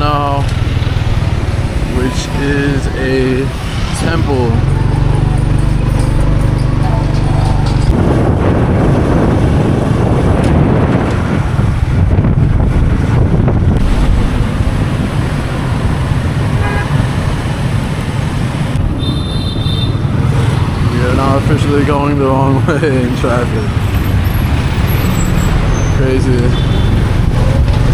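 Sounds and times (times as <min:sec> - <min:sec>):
road traffic: 0:00.0 - 0:27.9
wind on microphone: 0:07.1 - 0:19.1.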